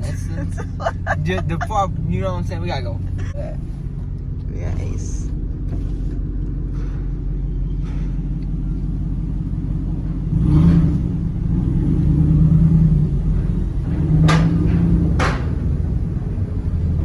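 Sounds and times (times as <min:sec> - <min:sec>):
pickup truck engine rumbling: 0:00.0 - 0:17.0
sharp knocks: 0:14.2 - 0:15.7.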